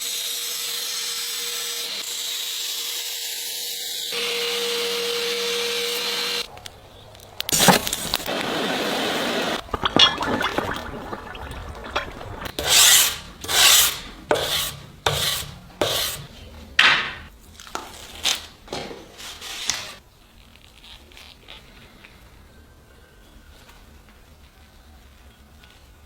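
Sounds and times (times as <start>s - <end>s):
hand file rasping: 12.5s - 17.3s.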